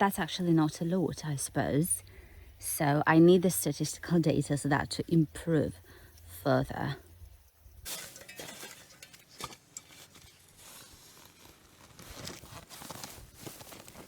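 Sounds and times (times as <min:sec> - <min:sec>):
digging knocks and rustles in soil: 0:07.8 - 0:14.0.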